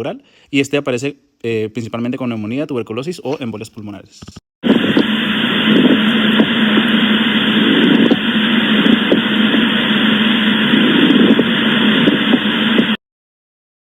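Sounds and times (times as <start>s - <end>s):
stethoscope hiss: 4.7s - 12.9s.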